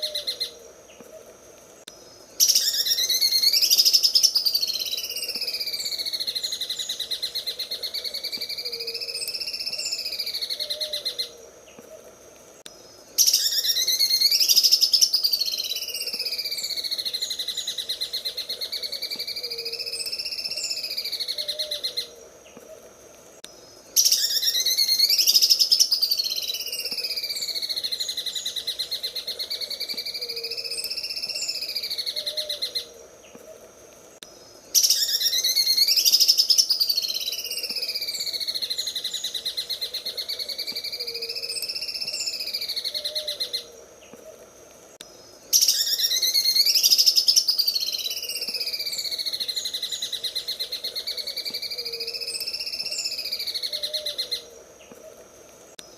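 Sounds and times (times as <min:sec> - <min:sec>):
bird singing trill: 0:02.0 - 0:11.4, 0:13.2 - 0:22.1, 0:23.6 - 0:32.9, 0:34.7 - 0:43.7, 0:45.5 - 0:54.5.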